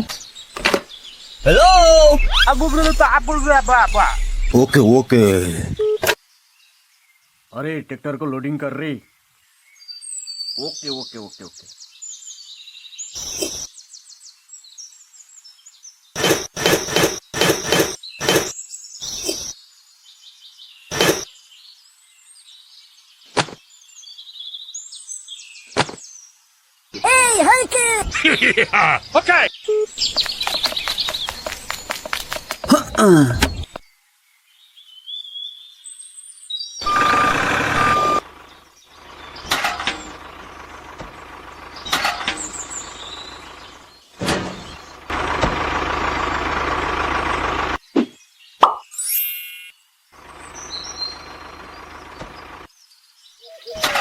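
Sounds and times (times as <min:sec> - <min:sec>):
birds chirping: 0:00.0 - 0:34.0, 0:36.6 - 0:49.0, 0:50.2 - 0:54.0
truck engine: 0:01.4 - 0:05.7, 0:36.8 - 0:47.8, 0:50.2 - 0:52.7
short noisy bursts: 0:16.2 - 0:18.5, 0:36.8 - 0:38.3
reversing beeps: 0:36.8 - 0:38.2.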